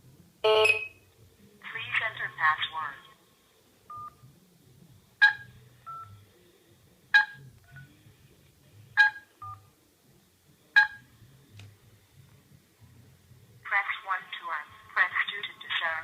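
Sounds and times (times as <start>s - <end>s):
loud short beeps: 0.5s - 1.0s
quiet touch-tone: 3.9s - 4.3s, 5.2s - 6.4s, 7.1s - 9.8s, 10.7s - 16.0s.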